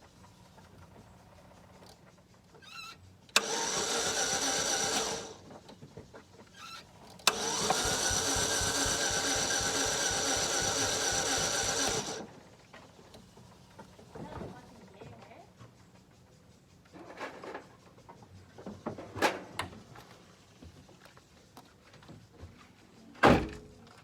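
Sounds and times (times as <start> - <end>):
engine cranking: 3.3 - 5.8, 6.5 - 12.4.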